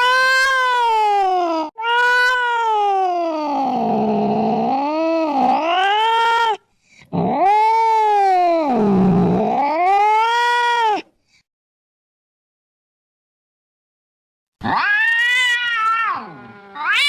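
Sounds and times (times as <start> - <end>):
cat yowling: 0.0 - 6.6, 7.2 - 11.1, 14.6 - 17.0.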